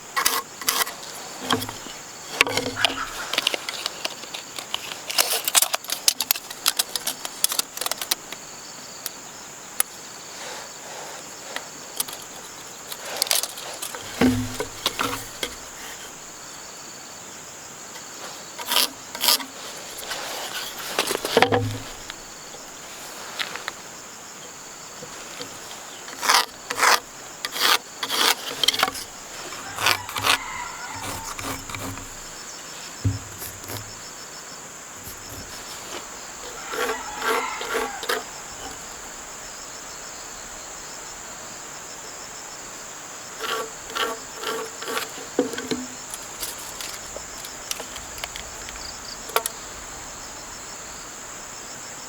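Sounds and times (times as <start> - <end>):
insect chirring: 0.0 - 52.0
sharp knocks and clatter: 13.2 - 16.1, 18.6 - 22.3, 25.0 - 34.1
heavy thumps: 13.9 - 15.8, 21.0 - 22.5, 28.7 - 34.1.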